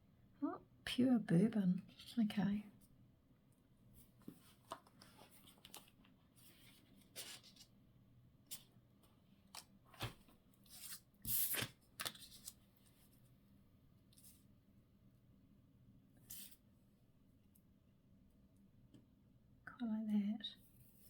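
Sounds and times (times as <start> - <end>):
paper and card rustling: 4.2 - 7.7, 9.5 - 13.0.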